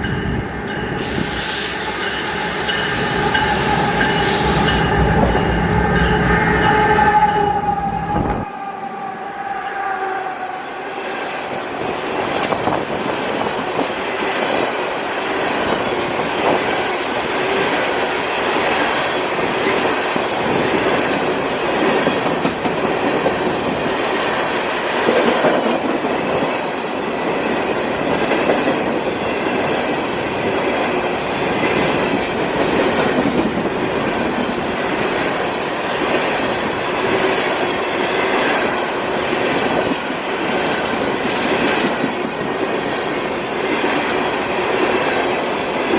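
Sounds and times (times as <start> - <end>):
train wheels clattering over rail joints: 19.7 - 24.4, 36.0 - 45.9.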